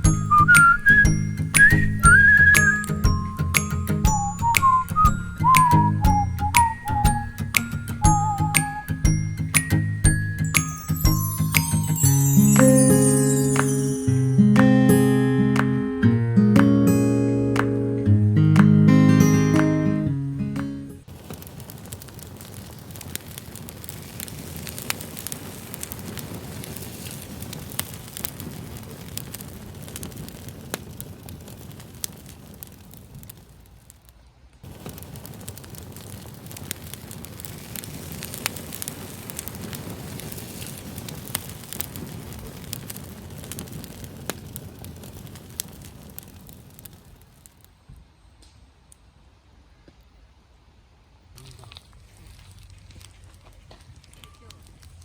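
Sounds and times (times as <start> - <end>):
low fire rumble: 0.0 - 13.5, 20.0 - 47.8, 50.8 - 55.0
acoustic guitar strummed and picked: 0.0 - 21.0
campfire crackling and popping: 0.0 - 47.8, 51.3 - 55.0.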